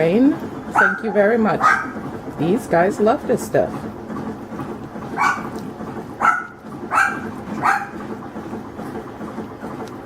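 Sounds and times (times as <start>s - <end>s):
dog yapping: 0.7s - 2.0s, 5.1s - 5.6s, 6.2s - 8.1s.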